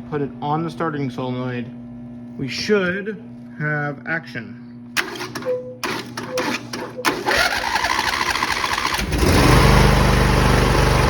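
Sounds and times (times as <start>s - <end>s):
lawn tractor engine running: 5.0s - 11.0s
starter cranking engine: 5.0s - 11.0s.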